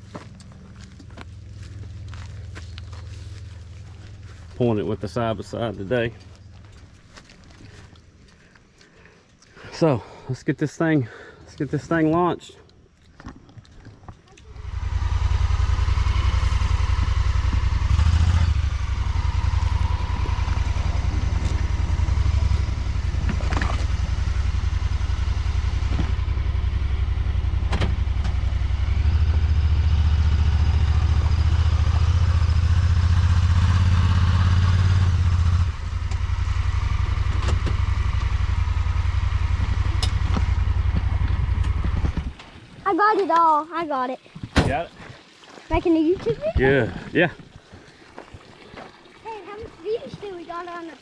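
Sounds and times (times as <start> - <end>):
utility vehicle engine running: 14.4 - 42.8.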